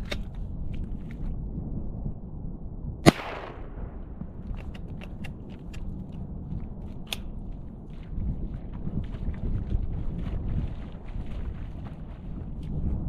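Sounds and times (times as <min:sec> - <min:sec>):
low wind rumble: 0:00.0 - 0:13.0
shotgun shot with echo: 0:03.0 - 0:04.0.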